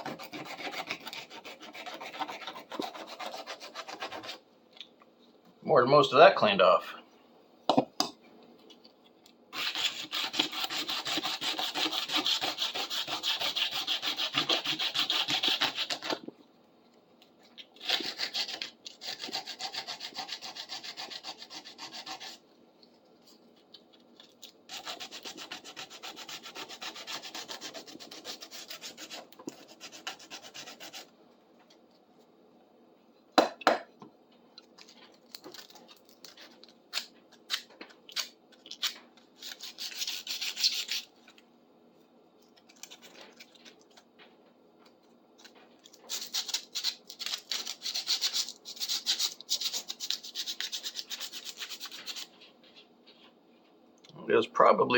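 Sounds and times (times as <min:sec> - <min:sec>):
sandpaper rubbing on steel: 0:09.6 - 0:16.0.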